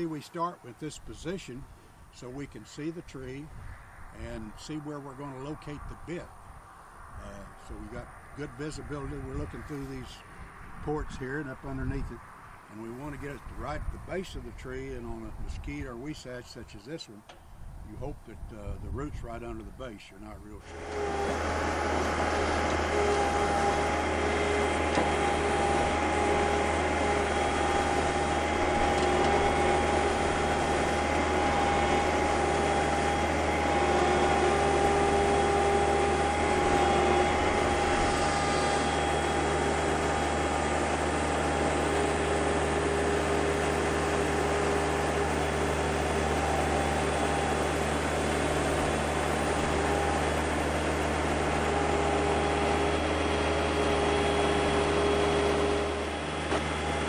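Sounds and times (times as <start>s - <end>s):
steady whine: 0.0s - 57.0s
loader engine running: 20.4s - 57.0s.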